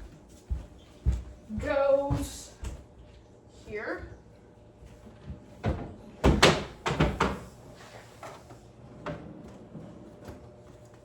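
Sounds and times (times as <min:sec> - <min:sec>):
cabinet door and dishware knocking: 0:05.7 - 0:07.4.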